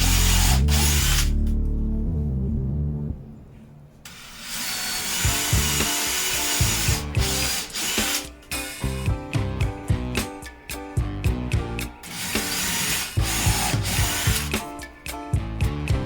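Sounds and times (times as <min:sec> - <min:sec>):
power drill running: 0:00.0 - 0:01.4, 0:04.1 - 0:08.8, 0:12.1 - 0:14.5
background music with beat: 0:05.2 - 0:16.0.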